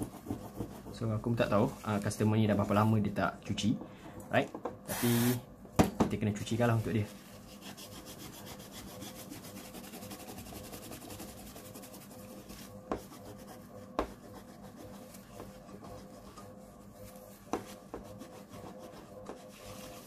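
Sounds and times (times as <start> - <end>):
tissue paper wiping: 6.6 - 20.0.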